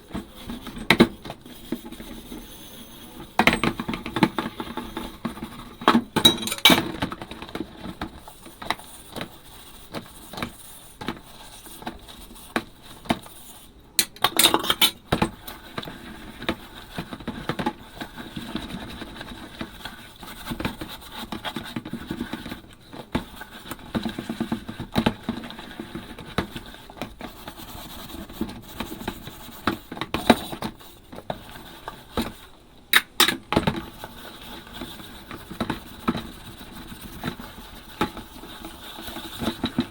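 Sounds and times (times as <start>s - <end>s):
dishes clinking: 6.1s - 7.0s, 14.0s - 15.0s.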